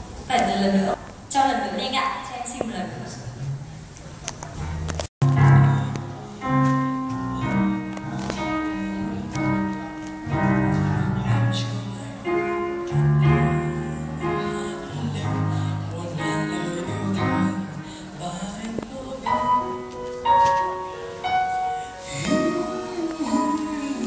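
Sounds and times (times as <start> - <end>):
band playing instrumental: 4.8 - 11.6, 22.0 - 24.0.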